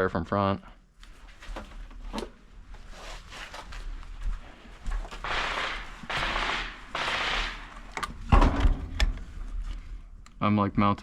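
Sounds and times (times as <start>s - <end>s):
airsoft gunfire: 5.2s - 8.0s.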